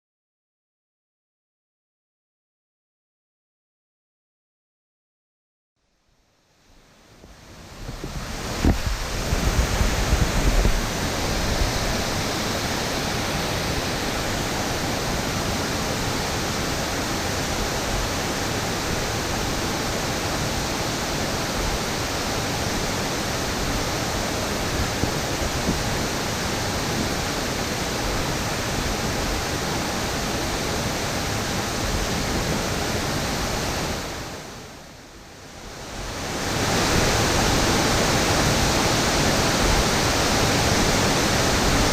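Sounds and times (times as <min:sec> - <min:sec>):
waterfall rushing: 0:07.3 - 0:34.8, 0:35.5 - 0:41.9
wind buffeting microphone: 0:07.8 - 0:12.4.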